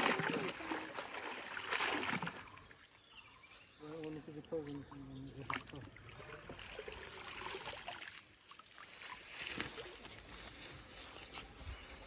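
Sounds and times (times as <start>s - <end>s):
sharp water splash: 0.0s - 2.4s
pond water sloshing: 0.0s - 12.0s.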